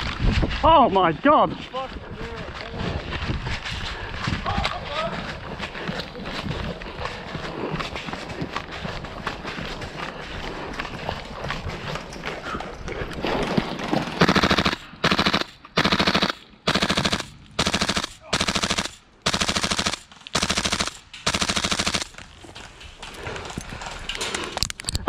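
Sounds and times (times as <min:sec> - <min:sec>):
rustling and movement: 0:00.0 - 0:25.0
airsoft rifle full-auto bursts: 0:14.2 - 0:22.2.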